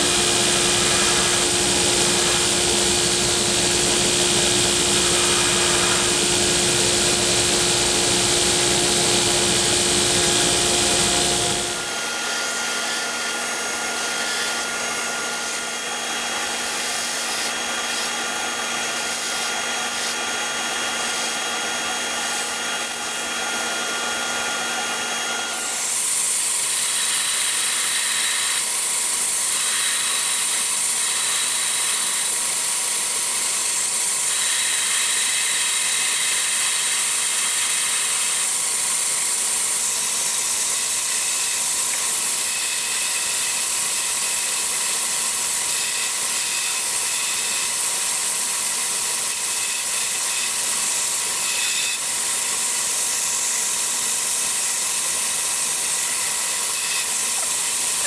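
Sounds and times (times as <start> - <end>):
machine whirring hiss: 4.4 - 6.7.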